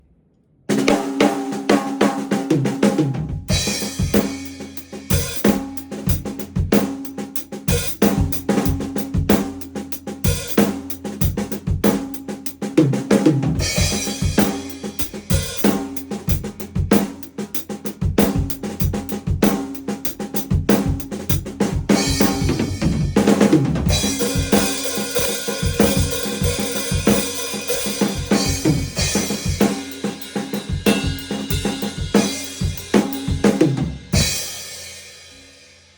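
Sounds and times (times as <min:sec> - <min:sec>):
snare drum: 0:00.7 - 0:34.6
hi-hat: 0:13.6 - 0:23.4.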